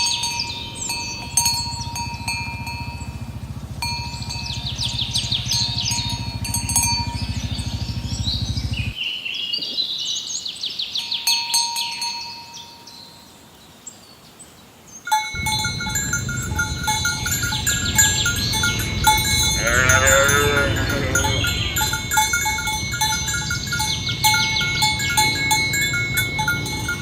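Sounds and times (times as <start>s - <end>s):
bell-like ringing: 0.0s - 8.6s, 15.1s - 27.0s
birds chirping: 0.0s - 27.0s
low pulsing rumble: 0.5s - 9.0s, 15.4s - 27.0s.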